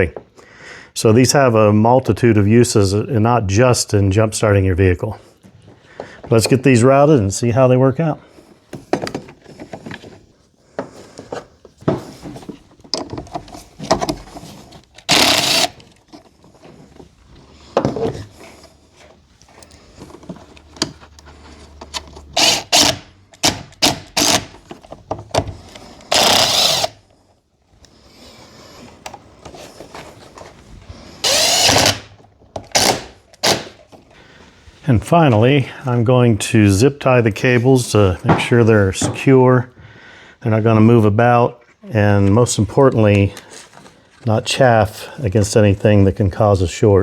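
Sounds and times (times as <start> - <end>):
power drill bursts: 15.0 - 15.8, 22.4 - 24.5, 26.1 - 27.0, 31.2 - 32.1, 32.7 - 33.8.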